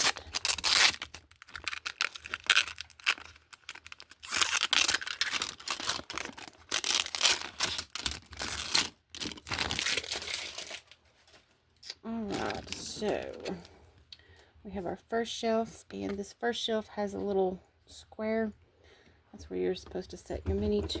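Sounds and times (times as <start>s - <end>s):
plastic packaging crinkling: 0.0s - 13.6s.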